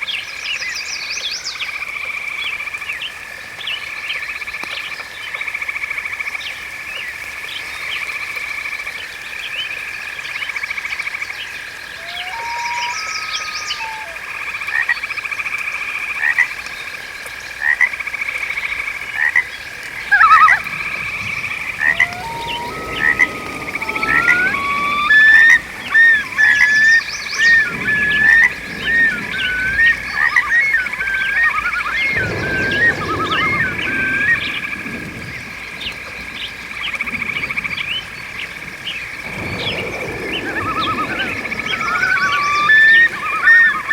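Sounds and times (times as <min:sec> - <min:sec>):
frogs croaking: 0:00.0 - 0:43.9.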